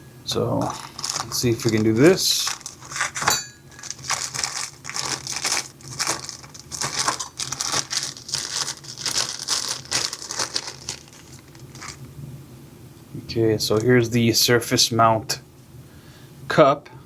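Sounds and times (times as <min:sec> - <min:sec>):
plastic bag crinkling: 0:00.6 - 0:12.1.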